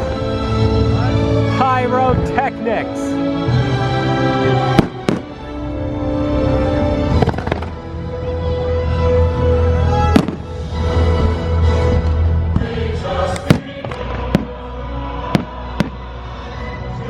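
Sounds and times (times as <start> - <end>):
show soundtrack music: 0.0 - 17.0
fireworks bangs: 4.8 - 5.4, 7.1 - 7.9, 10.1 - 10.6, 13.4 - 14.6, 15.3 - 16.1.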